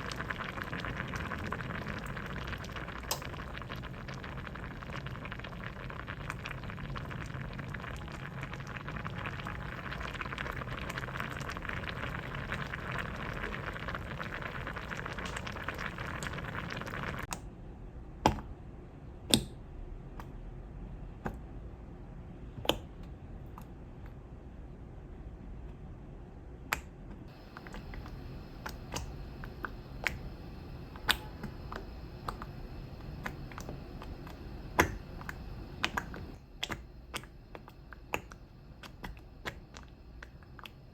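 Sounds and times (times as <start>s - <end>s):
soup boiling in a pot: 0.0s - 17.3s, 27.3s - 40.9s.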